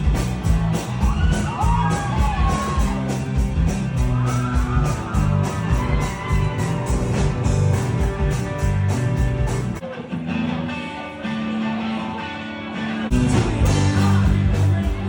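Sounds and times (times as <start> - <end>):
steady drum beat: 0.0 - 9.8, 13.1 - 15.0
thick bass line: 0.0 - 9.8, 13.1 - 15.0
live rock band playing: 0.0 - 15.0.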